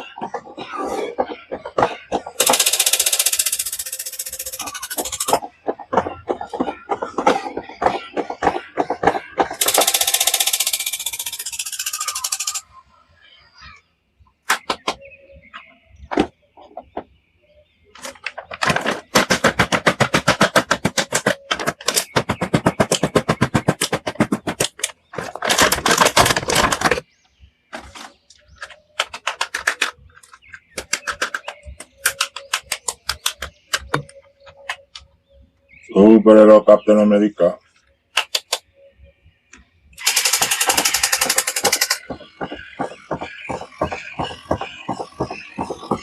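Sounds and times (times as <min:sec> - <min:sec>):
plastic toys clicking and scraping: 0:00.0 - 0:12.6, 0:17.9 - 0:27.0, 0:27.7 - 0:35.1, 0:37.7 - 0:38.6, 0:40.0 - 0:46.0.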